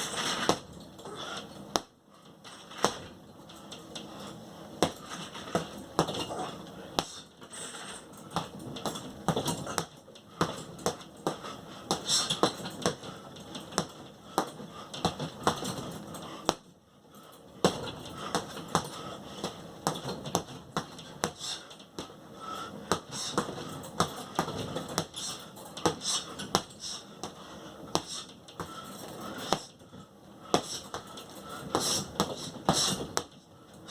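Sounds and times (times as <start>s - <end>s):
punches slapping: 0.3s - 0.7s, 4.8s - 6.4s, 8.3s - 15.8s, 17.6s - 22.1s, 22.8s - 29.8s, 31.7s - 33.4s.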